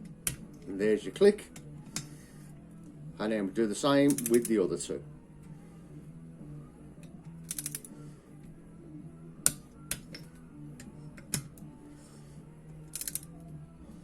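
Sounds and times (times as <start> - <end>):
torque wrench ratchet clicks: 7.4 - 7.9, 12.9 - 13.3
torque wrench breaking over click: 7.5 - 7.9, 12.9 - 13.3.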